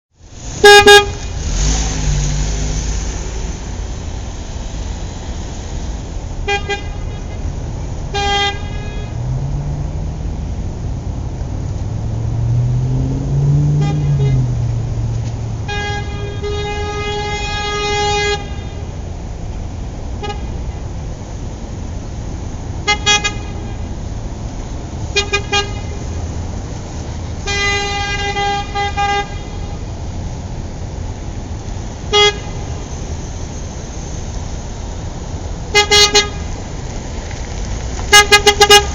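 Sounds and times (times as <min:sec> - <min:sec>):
traffic rumble: 0:00.1 - 0:38.9
low engine note: 0:00.2 - 0:29.3
car horn honking: 0:00.6 - 0:01.5, 0:06.4 - 0:07.4, 0:08.1 - 0:09.3, 0:13.7 - 0:14.6, 0:15.6 - 0:18.9, 0:20.2 - 0:20.8, 0:22.8 - 0:23.9, 0:25.1 - 0:26.1, 0:27.4 - 0:29.8, 0:32.1 - 0:32.8, 0:35.7 - 0:36.5, 0:38.1 - 0:38.9.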